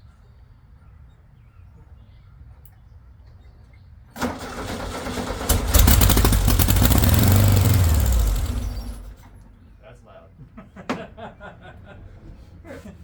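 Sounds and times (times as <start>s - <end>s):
car engine cranking and firing: 4.2s - 9.4s.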